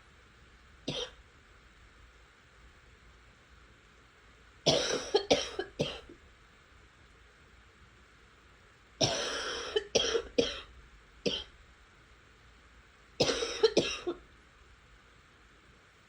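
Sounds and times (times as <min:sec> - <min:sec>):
person coughing: 0:00.9 - 0:01.2, 0:04.7 - 0:06.1, 0:09.0 - 0:10.7, 0:11.3 - 0:11.5, 0:13.2 - 0:14.2.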